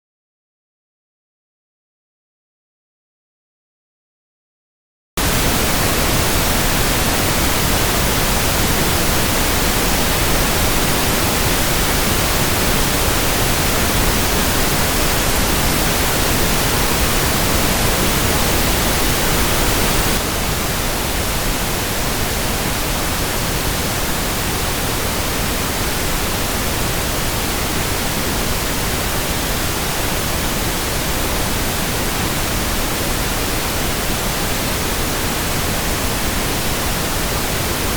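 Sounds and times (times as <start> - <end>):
pink noise hiss: 5.2 - 37.9.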